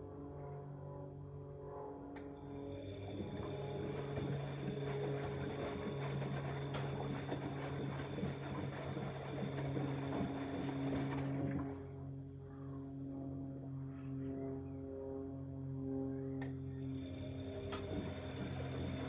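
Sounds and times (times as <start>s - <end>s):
washing machine drum tumbling: 3.2s - 11.8s.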